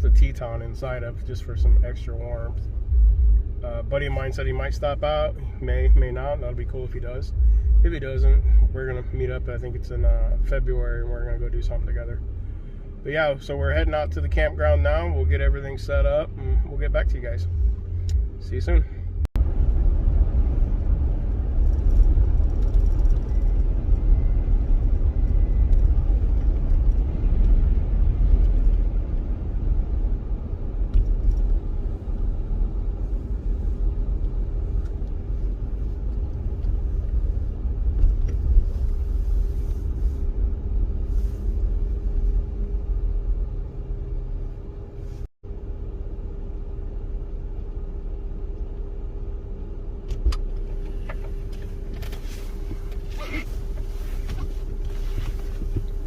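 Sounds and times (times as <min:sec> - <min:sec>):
road and engine rumble: 0:00.0 - 0:56.0.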